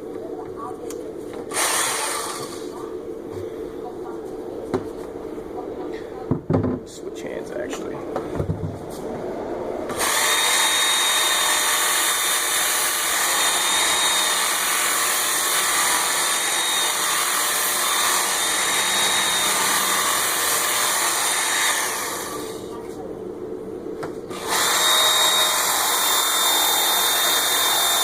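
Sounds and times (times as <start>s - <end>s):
belt sharpener grinding axe: 9.9s - 22.4s.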